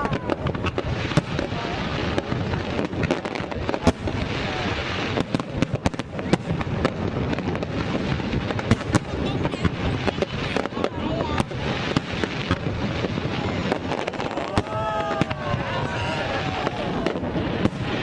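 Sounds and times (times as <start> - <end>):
fireworks bangs: 0.0 - 18.0.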